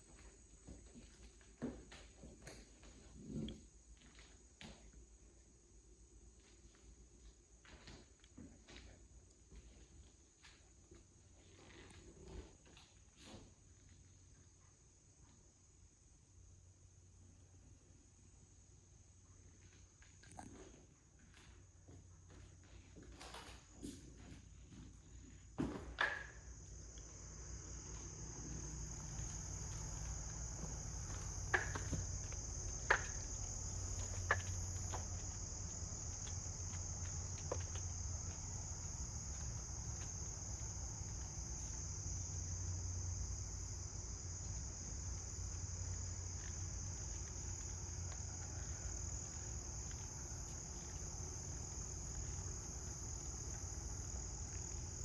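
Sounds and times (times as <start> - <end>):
insects buzzing: 25.1 - 55.0.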